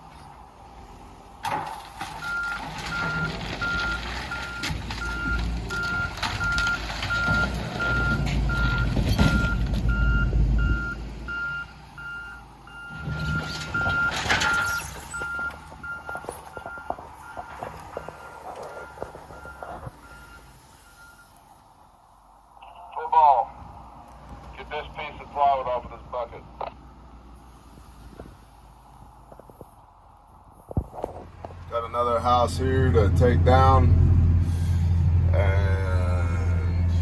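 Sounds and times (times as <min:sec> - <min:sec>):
loader diesel engine under load: 0:00.0 - 0:22.0, 0:30.6 - 0:37.0
debris clattering: 0:01.4 - 0:09.9, 0:12.9 - 0:19.9
backup alarm beeping: 0:02.2 - 0:21.4.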